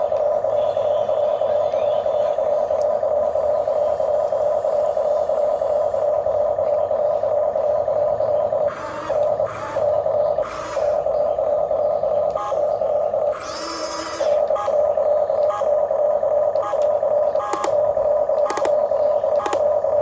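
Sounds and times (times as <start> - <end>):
electric motors whining: 0.0 - 20.0
harsh gear noise: 7.8 - 11.5, 12.3 - 15.9, 16.5 - 20.0.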